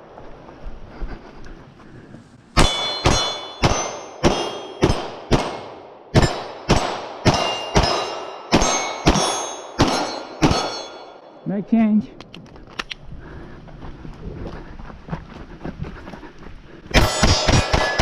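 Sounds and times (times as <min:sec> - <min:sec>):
gunshots: 0:02.6 - 0:10.9, 0:17.0 - 0:18.0
metallic ring of steel targets: 0:02.6 - 0:11.7, 0:16.9 - 0:18.0.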